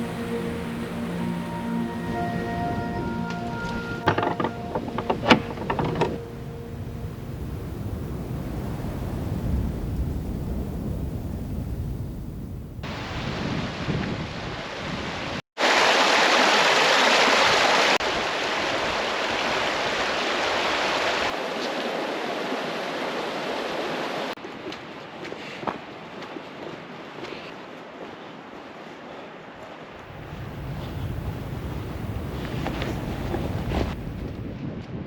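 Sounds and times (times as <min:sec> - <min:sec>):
wind rumbling on microphone: 0:03.0 - 0:15.4, 0:30.0 - 0:35.0
rushing water hiss: 0:12.8 - 0:24.3.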